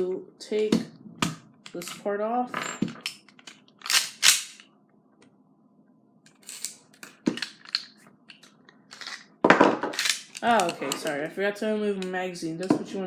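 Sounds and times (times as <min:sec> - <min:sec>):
pistol parts clicking and rattling: 0:02.9 - 0:04.7, 0:06.4 - 0:11.3.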